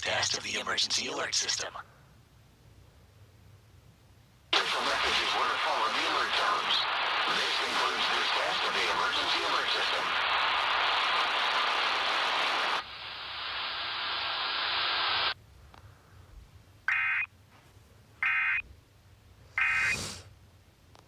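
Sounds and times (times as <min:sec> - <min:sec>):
loud static hiss: 0:00.0 - 0:01.9, 0:04.5 - 0:17.3, 0:19.5 - 0:20.4.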